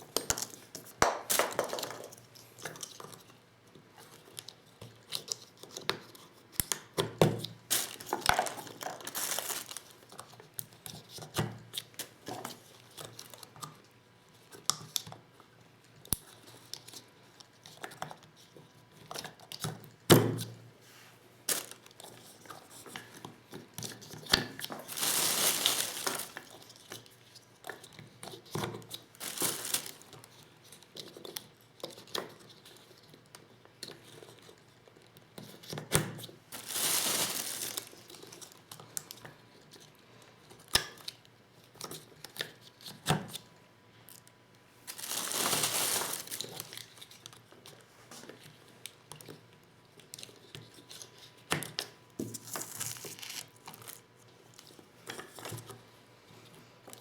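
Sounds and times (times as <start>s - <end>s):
rustling noise: 24.8s - 26.7s, 29.2s - 30.2s, 36.5s - 38.6s, 44.9s - 46.9s.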